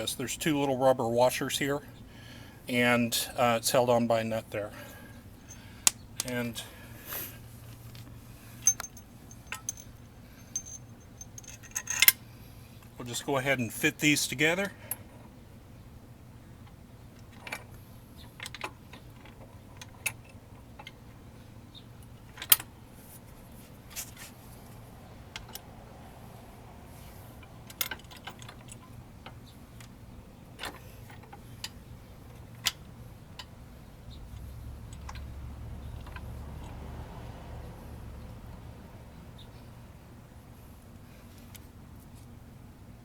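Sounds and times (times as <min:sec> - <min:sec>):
metal clinks and knocks: 0:08.6 - 0:12.2.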